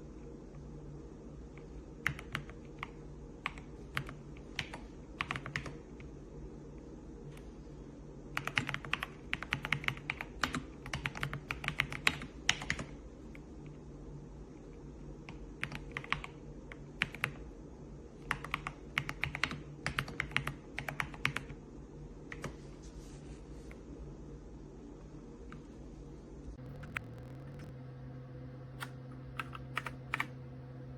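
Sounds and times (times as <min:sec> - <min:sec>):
mechanical keyboard typing: 0:02.0 - 0:05.8, 0:08.4 - 0:13.0, 0:15.3 - 0:17.4, 0:18.3 - 0:21.6, 0:26.6 - 0:27.7, 0:28.8 - 0:30.4.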